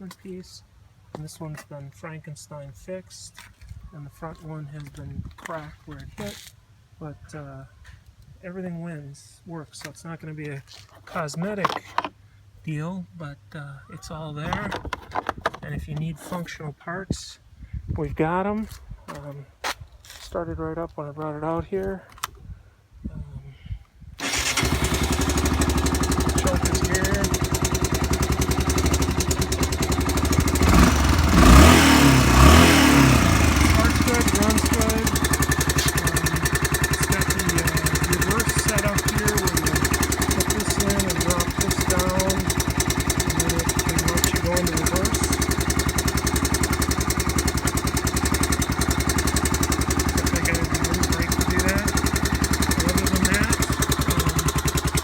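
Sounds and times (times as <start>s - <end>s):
four-wheeler engine idling: 24.2s - 55.0s.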